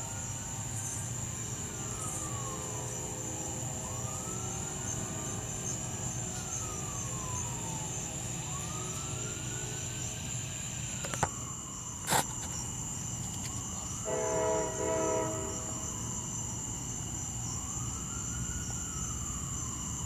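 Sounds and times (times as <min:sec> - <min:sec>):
emergency siren wailing: 0:00.0 - 0:20.0
train horn blasts: 0:02.6 - 0:03.9, 0:14.0 - 0:16.0.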